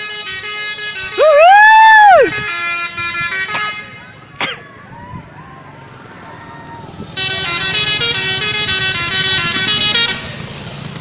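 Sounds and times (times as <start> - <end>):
musical bus horn tune: 0.0 - 1.4, 2.2 - 4.4, 7.2 - 10.8
engine noise: 0.0 - 11.0
traffic noise: 0.0 - 11.0.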